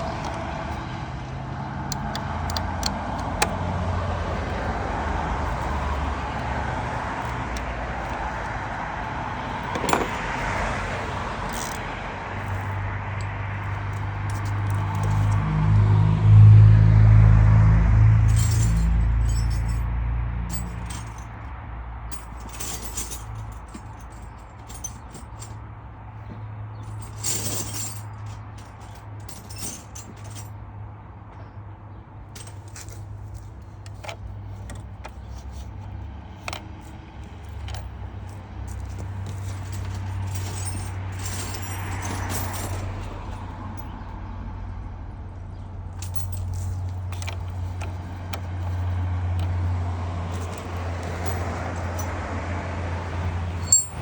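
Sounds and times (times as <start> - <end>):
metal tools clinking: 5.4 - 10.8, 11.4 - 11.8, 12.4 - 15.5, 18.2 - 19.8, 20.5 - 21.5, 22.1 - 30.6, 32.3 - 44.0, 45.9 - 52.2, 53.1 - 54.0.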